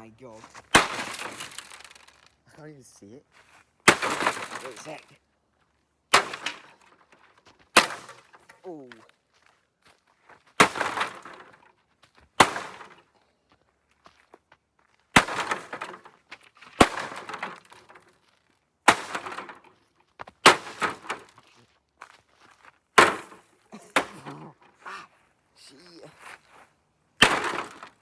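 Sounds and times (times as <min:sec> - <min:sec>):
hammer smashing television: 0:00.7 - 0:02.1, 0:03.9 - 0:05.0, 0:06.1 - 0:06.7, 0:07.8 - 0:08.4, 0:10.6 - 0:11.5, 0:12.4 - 0:13.0, 0:15.2 - 0:16.0, 0:16.8 - 0:17.9, 0:18.9 - 0:19.6, 0:20.4 - 0:21.4, 0:23.0 - 0:24.3, 0:27.2 - 0:28.0
breaking pieces clattering: 0:00.7 - 0:02.4, 0:03.9 - 0:05.1, 0:16.8 - 0:18.1.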